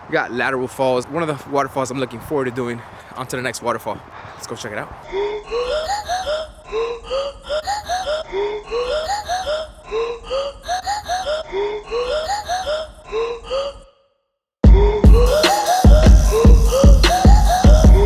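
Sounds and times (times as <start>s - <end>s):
steady low bass: 14.7s - 18.0s.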